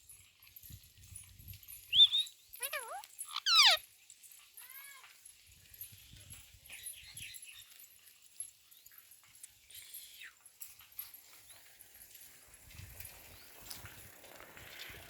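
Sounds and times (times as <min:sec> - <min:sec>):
parrot chattering: 0:02.0 - 0:03.8
parrot screeching: 0:02.0 - 0:03.8.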